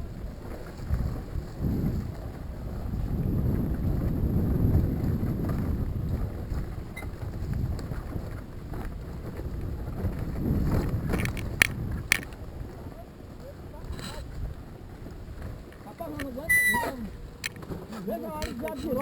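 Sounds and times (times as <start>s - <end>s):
wind buffeting microphone: 0.0s - 19.0s
sharp clicks: 11.2s - 12.4s, 17.4s - 17.7s.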